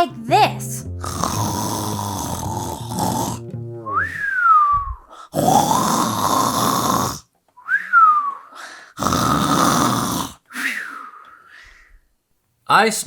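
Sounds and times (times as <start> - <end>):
person imitating cartoon snoring: 0.9 - 3.5, 5.3 - 7.3, 9.0 - 10.4
rising and falling whistle: 3.8 - 5.1, 7.6 - 8.5.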